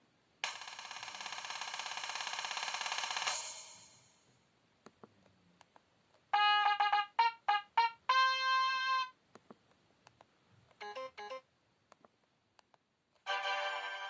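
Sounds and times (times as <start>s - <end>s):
phone electronic alert tones: 10.8s - 11.4s.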